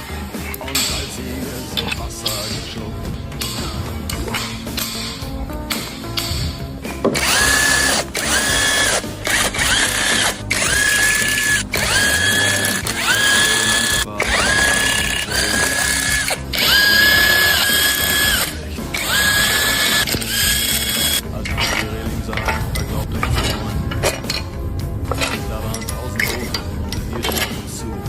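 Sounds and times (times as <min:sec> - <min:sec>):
power wrench whine: 0:03.4 - 0:24.5.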